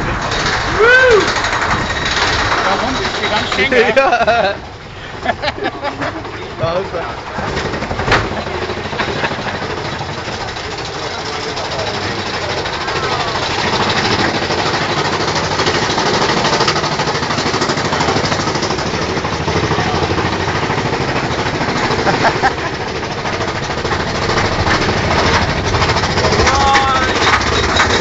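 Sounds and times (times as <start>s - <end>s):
roller coaster cars clattering: 0.0s - 28.0s.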